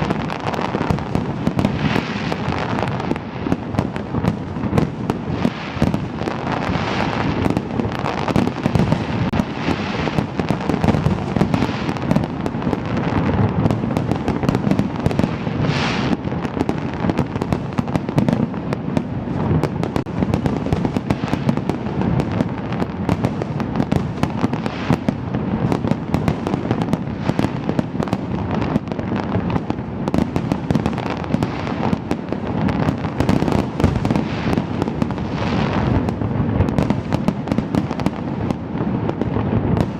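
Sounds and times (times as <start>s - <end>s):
fireworks bangs and crackling: 0.0s - 39.9s.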